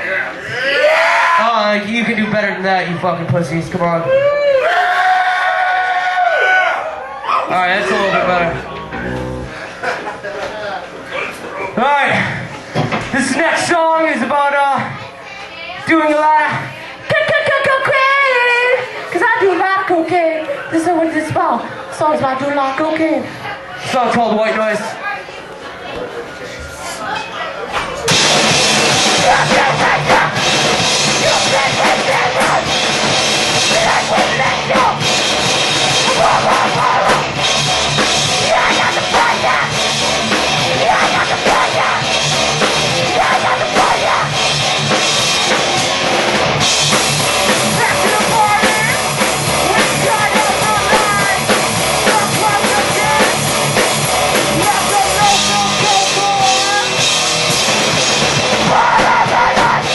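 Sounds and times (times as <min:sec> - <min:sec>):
driving drum kit: 0:07.6 - 0:09.8, 0:28.1 - 0:59.9
rock band playing live: 0:07.8 - 0:10.2, 0:28.1 - 0:59.9.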